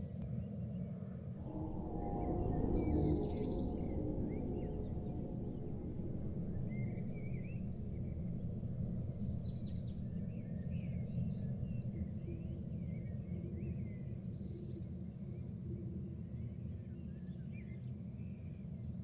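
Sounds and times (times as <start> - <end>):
low background rumble: 1.4 - 14.4.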